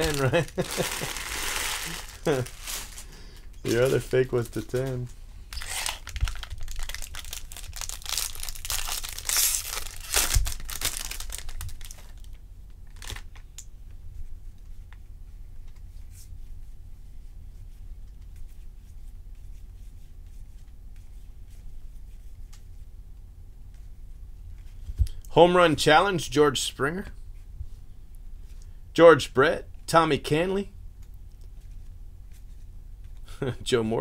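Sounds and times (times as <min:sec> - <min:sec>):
foil wrapper tearing and crinkling: 0:00.0 - 0:03.1, 0:03.8 - 0:13.4
cards rustling and ticking: 0:00.0 - 0:13.7.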